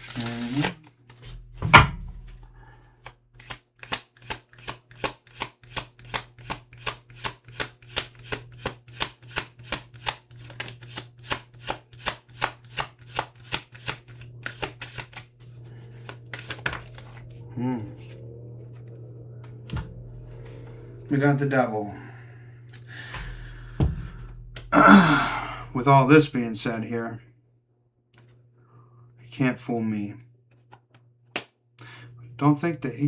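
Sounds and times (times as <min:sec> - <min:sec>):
cards being shuffled: 0:00.0 - 0:01.5, 0:03.0 - 0:18.9
thump: 0:01.6 - 0:02.2, 0:23.2 - 0:24.4.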